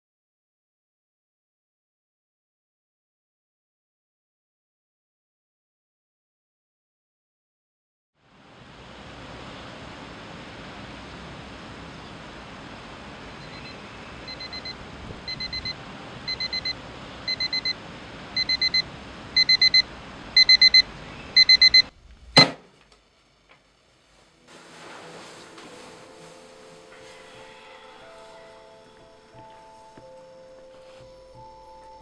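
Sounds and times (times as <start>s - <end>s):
steady hiss: 8.2s - 32.0s
digital alarm clock beeping: 13.4s - 17.8s, 18.4s - 21.9s
sharp thump: 22.1s - 22.7s.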